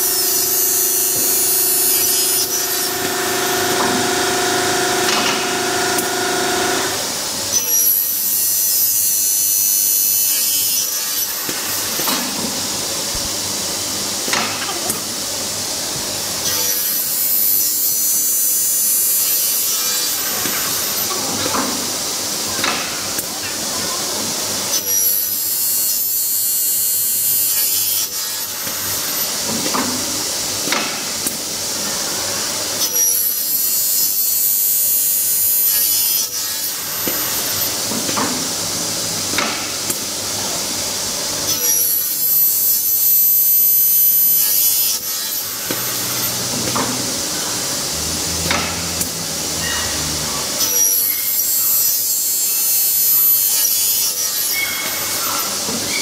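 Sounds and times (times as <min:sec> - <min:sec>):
saw blades running: 0:00.0 - 0:08.2
saw cutting aluminium screech: 0:00.0 - 0:12.0, 0:32.8 - 0:37.8, 0:41.5 - 0:46.5, 0:49.6 - 0:56.0.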